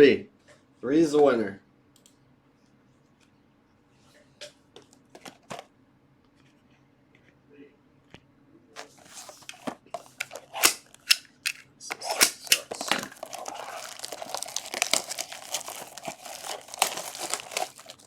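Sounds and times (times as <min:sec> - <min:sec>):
packaging being torn and crinkled: 0:10.2 - 0:18.0.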